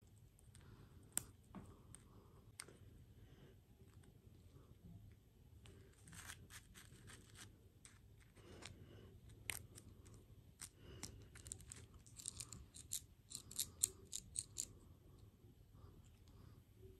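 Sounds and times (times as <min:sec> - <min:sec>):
small sharp clicks and snaps: 0:00.4 - 0:01.3.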